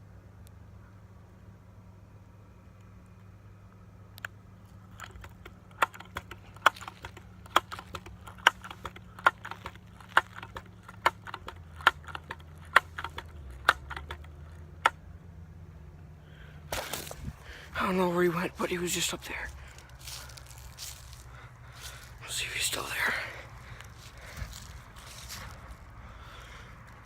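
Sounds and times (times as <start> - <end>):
low background hum: 0.0 - 27.0
footsteps crunching: 5.0 - 14.0, 16.7 - 27.0.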